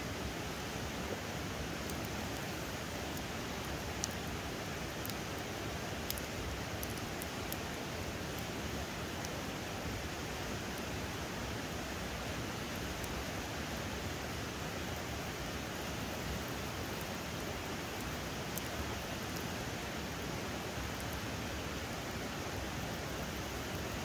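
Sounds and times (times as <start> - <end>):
faint ticks: 6.1 - 7.6.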